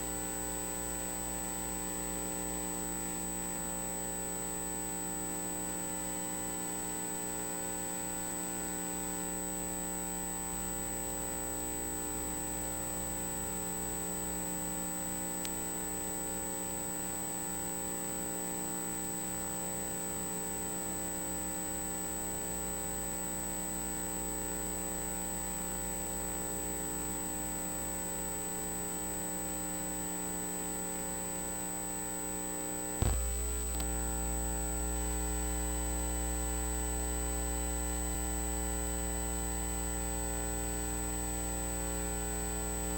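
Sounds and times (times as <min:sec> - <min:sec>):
electrical mains hum: 0:27.8 - 0:42.9
sharp click: 0:33.0 - 0:34.0.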